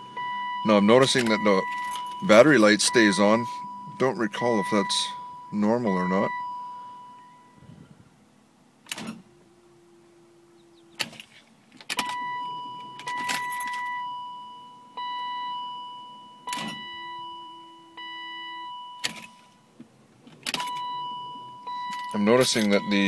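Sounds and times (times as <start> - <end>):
electronic warning chime: 0.0 - 7.7, 20.6 - 23.0
low steady hum: 0.0 - 23.0
ignition key clicks: 1.0 - 3.8, 10.9 - 14.0, 16.5 - 17.1, 19.0 - 21.0, 21.6 - 23.0.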